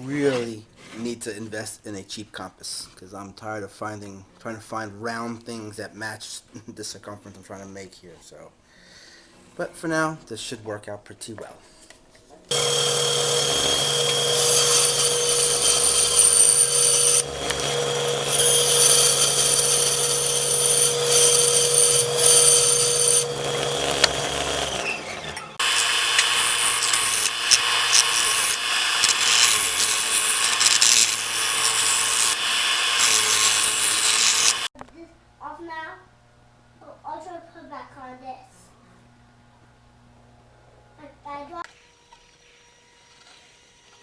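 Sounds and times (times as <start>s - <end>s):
power tool cutting wood: 12.5s - 34.7s.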